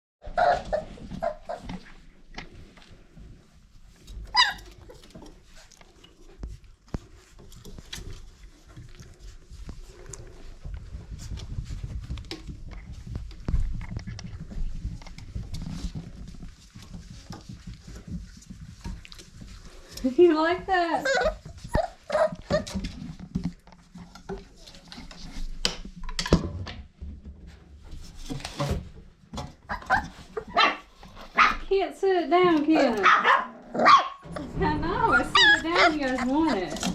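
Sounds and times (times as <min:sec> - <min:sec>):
puppy yelping: 0:00.3 - 0:01.7, 0:04.3 - 0:04.7, 0:21.0 - 0:22.8, 0:29.7 - 0:30.8, 0:32.8 - 0:34.2, 0:35.0 - 0:36.3
puppies scuffling and clicking: 0:00.3 - 0:33.3, 0:34.2 - 0:36.9.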